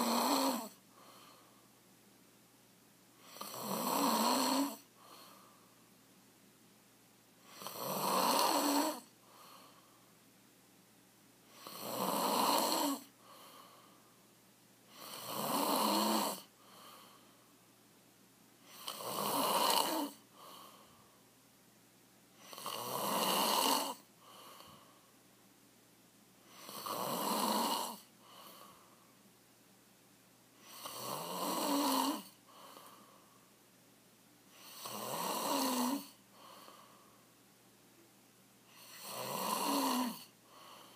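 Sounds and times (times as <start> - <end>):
man snoring loudly: 0.0 - 0.8, 3.2 - 4.9, 7.5 - 9.1, 11.5 - 13.1, 14.9 - 16.5, 18.7 - 20.2, 22.4 - 24.1, 26.5 - 28.1, 30.6 - 32.4, 34.6 - 36.2, 38.7 - 40.3
faint breath: 0.8 - 1.8, 4.8 - 5.9, 9.1 - 10.2, 13.1 - 14.4, 16.5 - 17.7, 20.2 - 21.4, 24.2 - 25.3, 28.0 - 29.3, 32.4 - 33.6, 36.1 - 37.4, 40.4 - 40.9.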